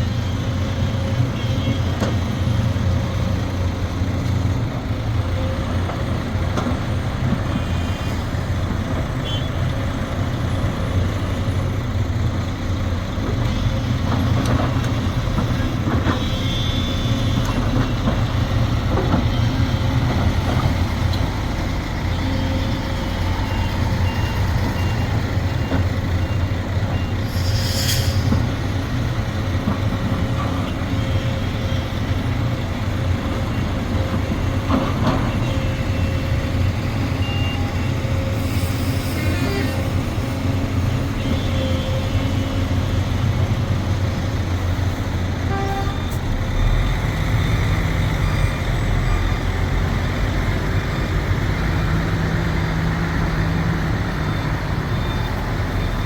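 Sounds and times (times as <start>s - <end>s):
excavator diesel engine running: 0.0s - 56.0s
brief hiss: 27.3s - 28.3s.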